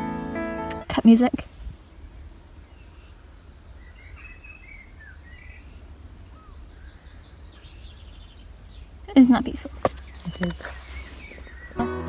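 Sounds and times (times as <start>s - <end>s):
birds chirping and whistling: 2.7s - 8.9s, 10.0s - 11.8s.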